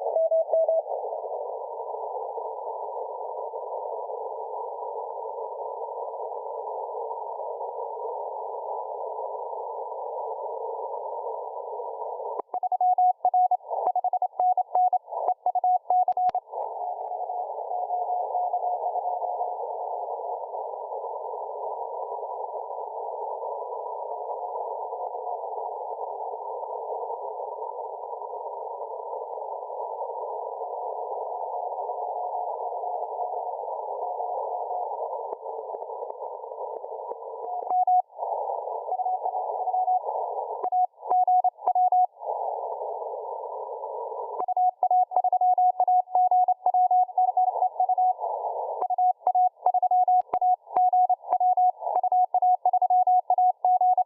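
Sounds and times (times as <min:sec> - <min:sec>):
morse code beep tone: 0:48.8 - 0:54.0.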